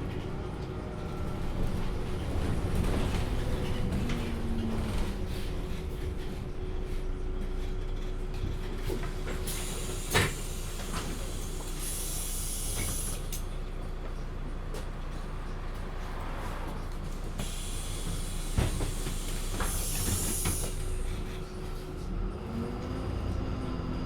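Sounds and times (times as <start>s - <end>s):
bus engine drone: 0.0s - 24.0s
compressed air hisses: 17.4s - 20.8s.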